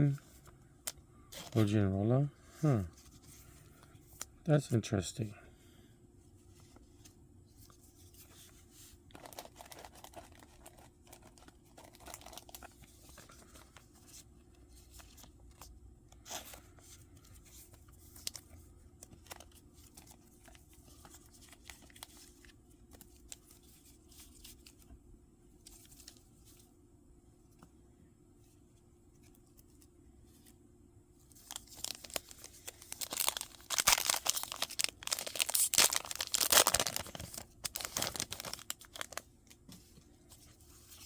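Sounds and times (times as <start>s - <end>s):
foil wrapper crinkling and tearing: 9.1s - 13.8s, 31.3s - 39.6s.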